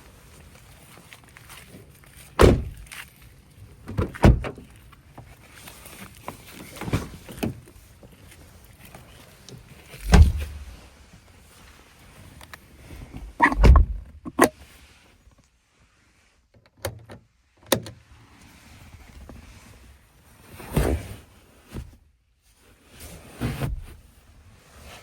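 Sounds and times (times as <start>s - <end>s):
car interior fittings clunking: 2.4s - 2.8s, 3.9s - 4.6s, 10.0s - 10.8s, 13.2s - 14.5s.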